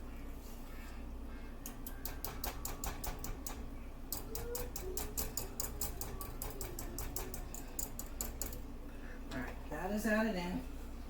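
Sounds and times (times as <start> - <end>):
whisk clicking against a bowl: 1.6 - 8.7.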